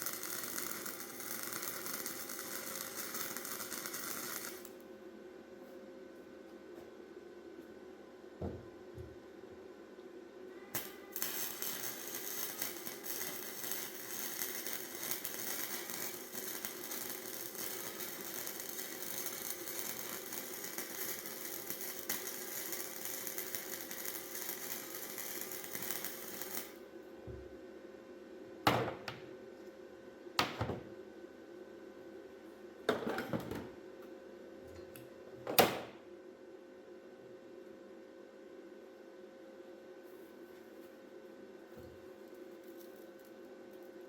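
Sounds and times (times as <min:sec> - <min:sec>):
welder crackling: 0:00.0 - 0:04.8, 0:10.7 - 0:26.8.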